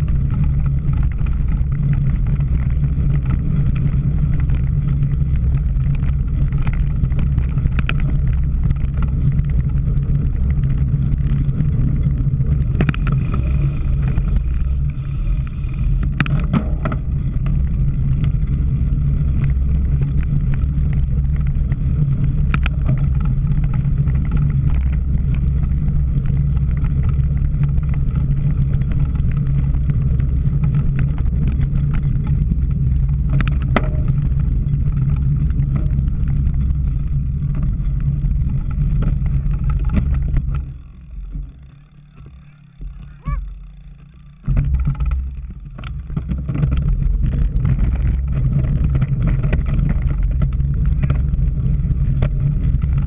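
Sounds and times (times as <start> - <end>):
bike knocking over rough ground: 0.0 - 14.9, 15.9 - 53.0
wind buffeting microphone: 0.0 - 43.8.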